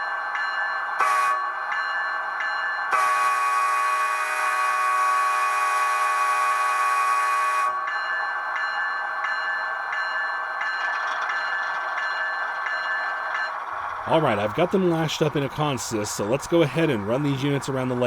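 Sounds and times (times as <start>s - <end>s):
locomotive air horn blast: 1.0s - 1.4s, 2.9s - 7.8s
diesel engine idling: 13.4s - 18.0s.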